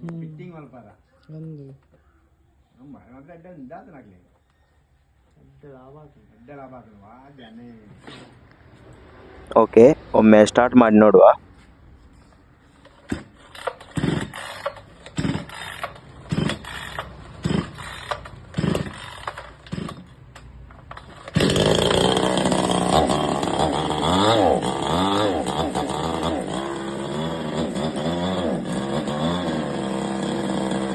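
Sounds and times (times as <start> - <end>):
chainsaw starter cord pulls: 12.8 - 30.9
chainsaw engine revving: 13.1 - 20.2, 20.9 - 30.9.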